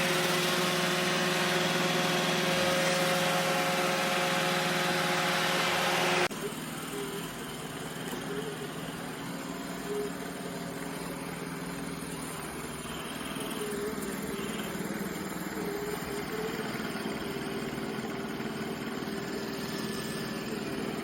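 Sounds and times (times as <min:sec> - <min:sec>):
robot vacuum motor hum: 0:00.0 - 0:21.0.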